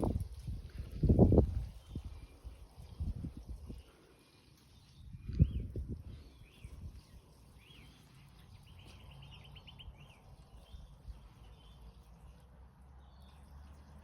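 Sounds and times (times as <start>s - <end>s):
wind buffeting microphone: 0.0s - 4.0s, 4.9s - 7.8s
small bird chirping: 1.1s - 14.0s.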